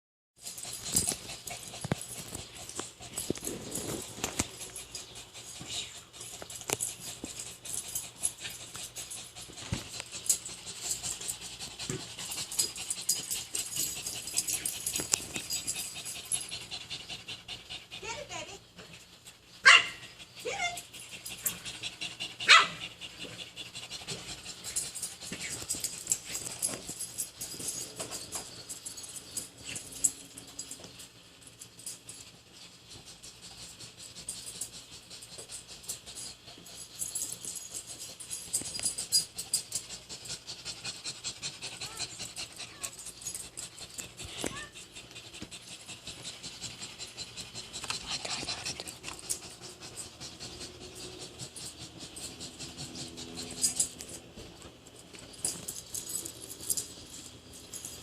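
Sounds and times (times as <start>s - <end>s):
dog barking: 19.6s - 20.0s, 22.4s - 22.8s.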